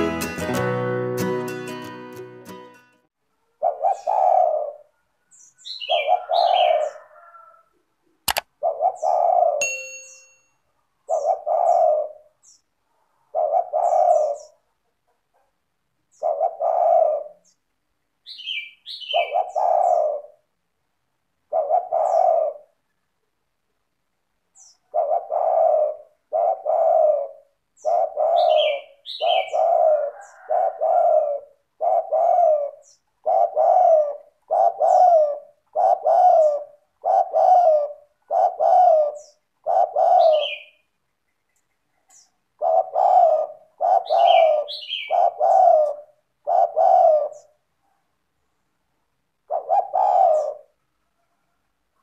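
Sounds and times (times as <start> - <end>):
dove cooing: 3.4 - 7.8, 8.5 - 9.6, 10.8 - 17.6, 18.5 - 20.5, 21.4 - 22.9, 24.6 - 41.0, 41.9 - 48.1, 49.3 - 51.6
thin high chirps: 9.6 - 10.5.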